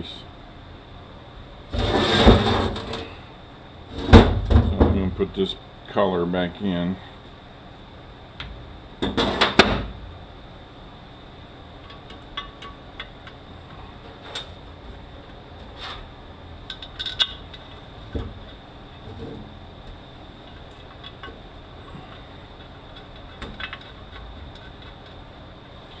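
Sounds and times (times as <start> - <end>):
metal parts clanking and clinking: 16.7 - 17.6.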